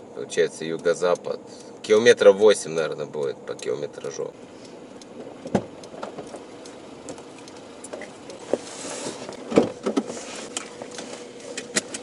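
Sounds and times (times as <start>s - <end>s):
light clicks and knocks in car: 5.0s - 12.0s.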